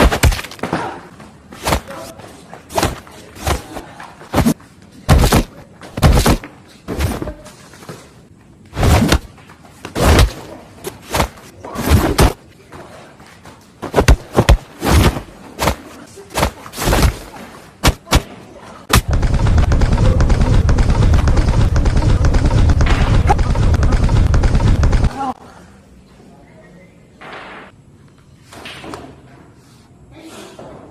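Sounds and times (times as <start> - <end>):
punch and kick hits: 0.0 - 0.6, 4.3 - 6.4, 8.8 - 9.3, 10.0 - 10.4, 11.1 - 12.4, 13.9 - 15.8, 16.4 - 18.3, 18.9 - 25.3.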